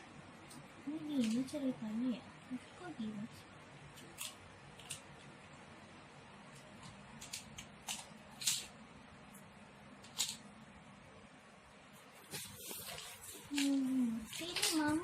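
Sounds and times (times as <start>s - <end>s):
plastic track pieces clicking: 4.0s - 5.1s, 6.6s - 8.8s, 10.0s - 10.4s, 14.3s - 15.0s.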